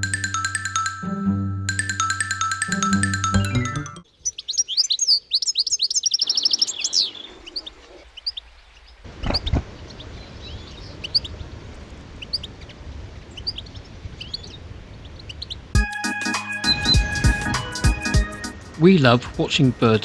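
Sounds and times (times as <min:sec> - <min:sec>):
small birds chirping: 0:04.0 - 0:15.8, 0:16.6 - 0:17.6.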